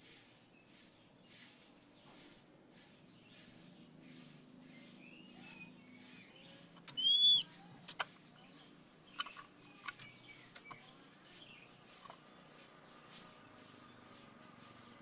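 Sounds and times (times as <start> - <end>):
bird sharp clicking calls: 5.3 - 8.2, 9.1 - 11.0
bird whistling: 6.8 - 7.5.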